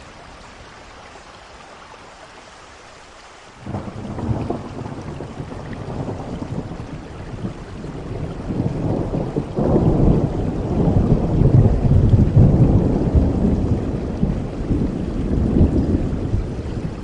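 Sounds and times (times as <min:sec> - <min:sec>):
steady rain: 0:00.0 - 0:17.0
thunder rumbling: 0:03.6 - 0:17.0.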